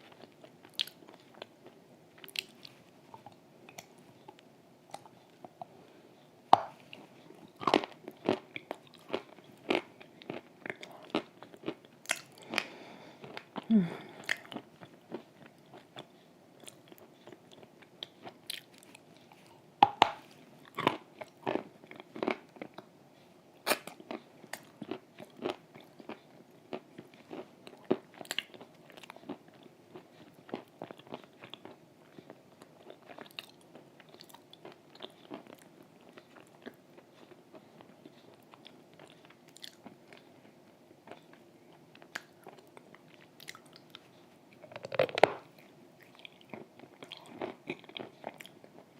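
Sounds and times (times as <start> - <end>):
person chewing crunchy chalk: 42.0 - 48.8.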